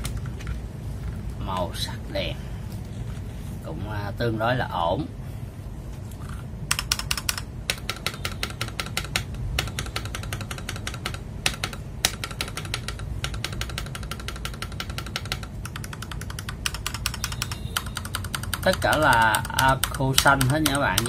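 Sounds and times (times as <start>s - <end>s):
mechanical keyboard typing: 6.7s - 21.0s.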